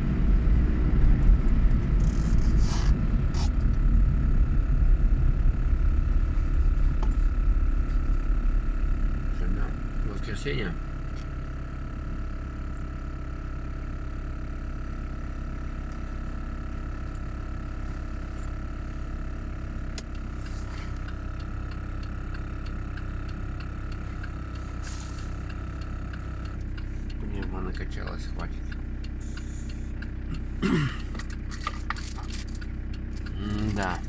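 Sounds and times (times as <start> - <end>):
low engine-like hum: 0.0 - 34.0
small air compressor running: 29.1 - 31.6.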